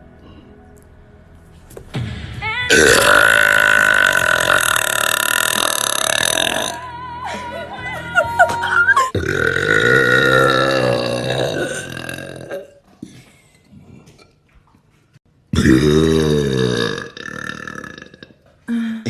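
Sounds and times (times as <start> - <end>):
woman burping: 2.7 - 6.8, 9.0 - 12.8, 15.6 - 18.5.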